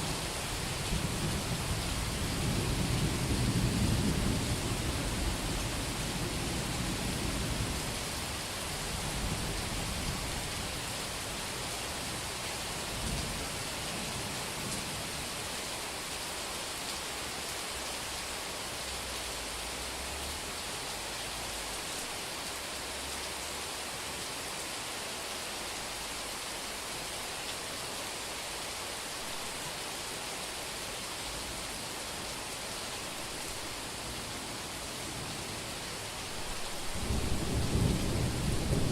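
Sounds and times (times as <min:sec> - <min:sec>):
heavy rain on street: 0:00.0 - 0:38.9
thunder rumbling: 0:36.6 - 0:38.9.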